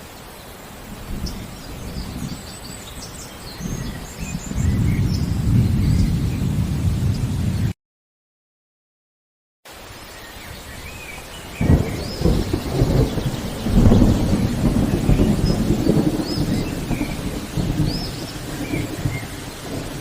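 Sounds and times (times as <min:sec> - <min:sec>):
birds chirping: 0:00.0 - 0:07.7, 0:09.9 - 0:20.0
steady rain: 0:00.0 - 0:07.8, 0:09.7 - 0:20.0
thunder clap and rumble: 0:00.9 - 0:07.8, 0:11.6 - 0:20.0.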